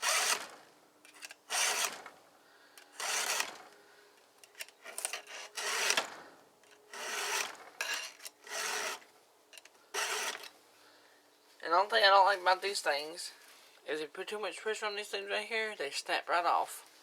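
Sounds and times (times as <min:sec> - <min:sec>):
file rasping on chainsaw chain: 0:06.9 - 0:09.0, 0:10.0 - 0:10.5.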